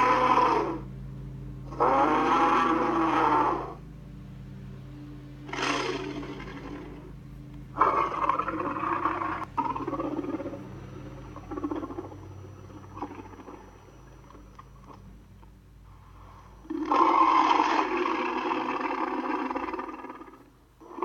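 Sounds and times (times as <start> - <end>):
growls: 0.0 - 0.9, 1.7 - 3.8, 5.5 - 7.1, 7.8 - 15.0, 16.4 - 21.0
monster roar: 0.0 - 0.9, 1.7 - 3.8, 5.5 - 7.1, 7.8 - 15.0, 16.6 - 21.0
low hum: 0.0 - 21.0.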